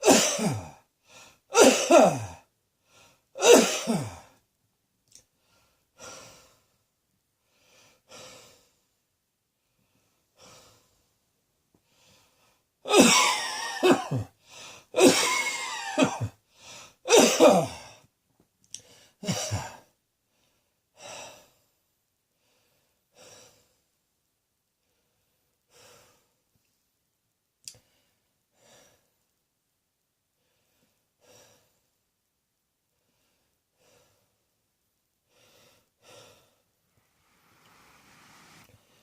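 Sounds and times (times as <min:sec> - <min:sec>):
person coughing: 0:00.0 - 0:00.8, 0:01.5 - 0:02.4, 0:03.4 - 0:04.2, 0:12.9 - 0:14.3, 0:15.0 - 0:16.4, 0:17.1 - 0:17.8, 0:19.2 - 0:19.8
person breathing: 0:02.8 - 0:03.3, 0:05.4 - 0:06.8, 0:07.4 - 0:09.0, 0:11.8 - 0:12.6, 0:14.4 - 0:15.0, 0:16.5 - 0:17.0, 0:35.3 - 0:39.0.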